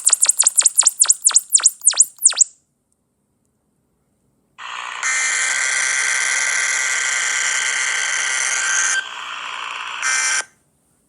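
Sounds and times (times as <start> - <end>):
harsh steady noise with high tone: 0.0 - 2.5.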